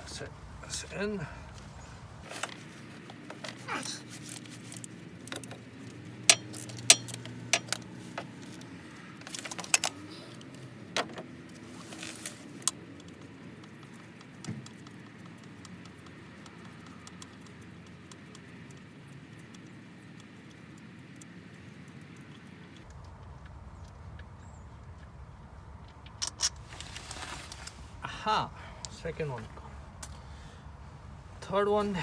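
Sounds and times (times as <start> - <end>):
metallic clinks of hand tool: 2.3 - 17.6.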